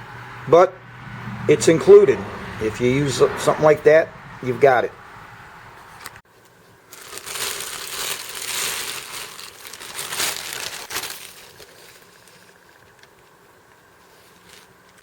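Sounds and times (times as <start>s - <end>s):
packaging crinkling and rustling: 6.9s - 15.0s.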